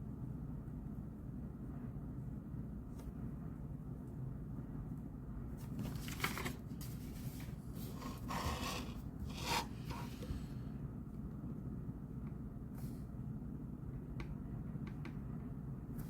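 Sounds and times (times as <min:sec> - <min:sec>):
low background hum: 0:00.0 - 0:16.0
paper rustling and scraping: 0:05.6 - 0:10.3.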